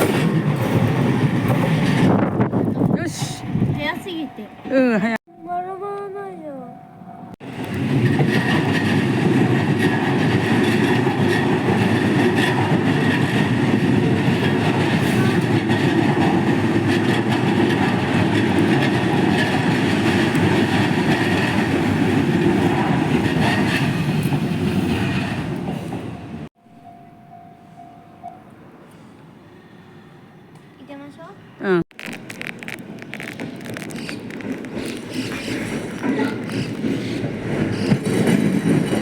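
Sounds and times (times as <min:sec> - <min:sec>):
train wheels rumbling on rail: 0:00.0 - 0:04.7, 0:07.4 - 0:26.5, 0:32.0 - 0:39.0.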